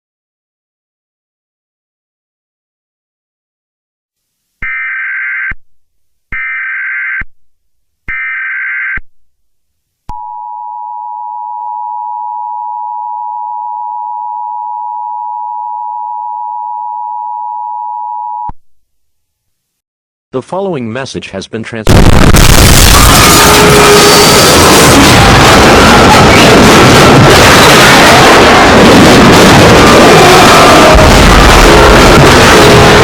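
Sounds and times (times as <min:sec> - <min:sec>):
piercing two-tone attention signal: 0:10.1 - 0:18.5.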